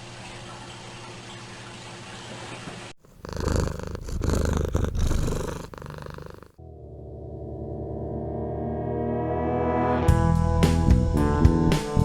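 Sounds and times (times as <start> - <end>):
even hiss: 3.0 - 6.5
cat purring: 3.0 - 6.6
music: 6.6 - 12.0.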